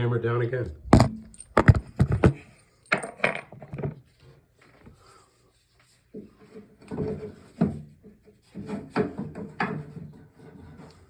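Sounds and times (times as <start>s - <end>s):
camera knocks and clatters: 0.7s - 2.4s.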